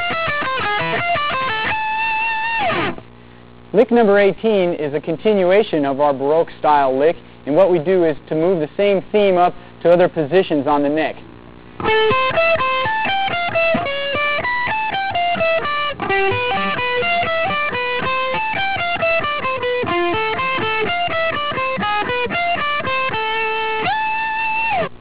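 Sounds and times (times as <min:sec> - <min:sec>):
electric guitar fast run: 0:00.0 - 0:03.0, 0:11.8 - 0:24.9.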